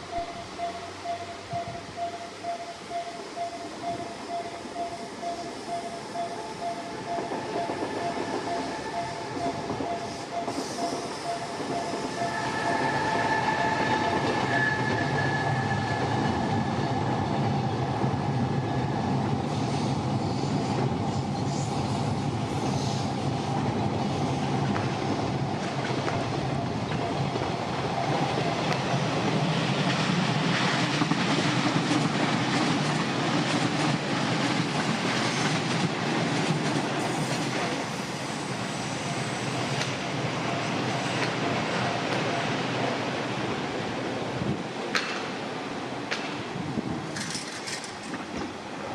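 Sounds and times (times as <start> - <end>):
crossing warning alarm: 0.0 - 19.3, 25.6 - 30.4, 36.4 - 43.0
train wheel rumble and rail clatter: 0.0 - 48.9.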